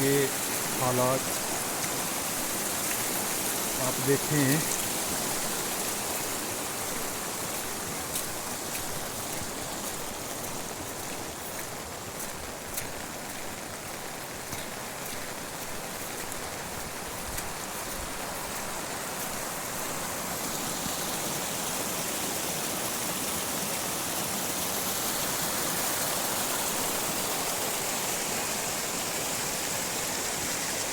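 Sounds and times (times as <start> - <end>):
heavy rain: 0.0 - 24.0
running water: 0.0 - 30.9.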